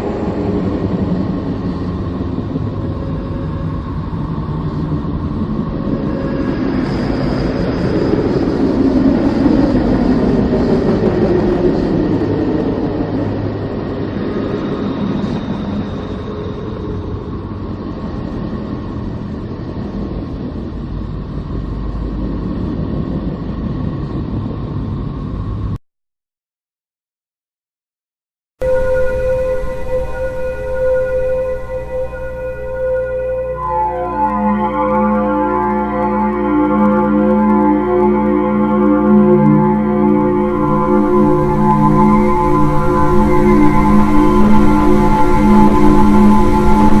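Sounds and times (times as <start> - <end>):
deep rumbling space drone: 0.0 - 25.8, 28.6 - 47.0
faint steady hums: 28.6 - 47.0.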